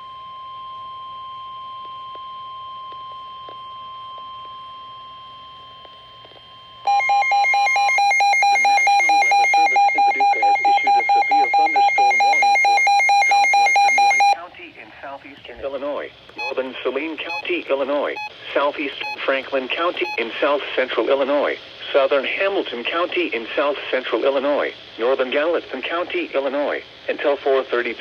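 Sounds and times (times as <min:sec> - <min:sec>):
faint steady alarm tone: 0:00.0 - 0:14.4
weather radio alarm beeping: 0:06.9 - 0:14.4, 0:16.4 - 0:18.3
faint broadcast voice: 0:09.0 - 0:12.6, 0:14.4 - 0:28.0.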